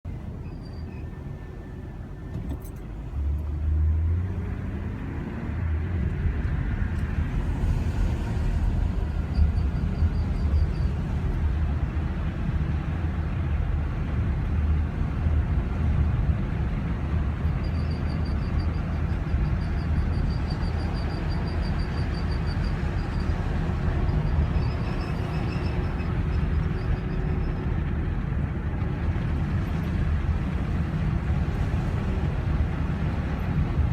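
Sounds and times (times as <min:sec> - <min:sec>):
car engine rumble: 0:00.1 - 0:33.9
faint high-pitched squeak: 0:00.4 - 0:02.8.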